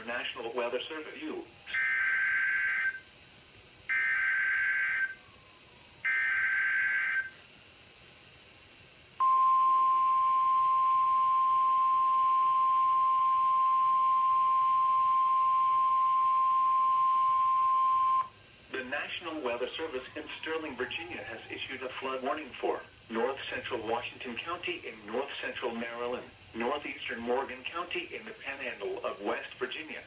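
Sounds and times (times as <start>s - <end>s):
steady warning alarm tone: 1.6s - 3.1s, 3.9s - 5.2s, 6.0s - 7.4s, 9.2s - 18.3s.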